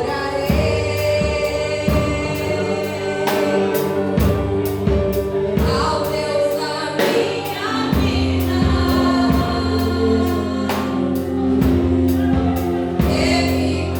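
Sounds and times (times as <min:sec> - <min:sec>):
band playing: 0:00.0 - 0:13.9
group singing gospel song: 0:00.0 - 0:13.9
steady drum beat: 0:00.0 - 0:13.9.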